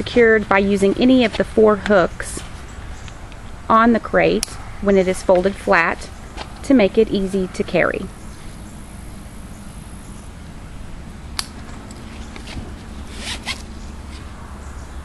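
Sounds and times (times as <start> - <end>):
zipper rasp: 12.0 - 14.3.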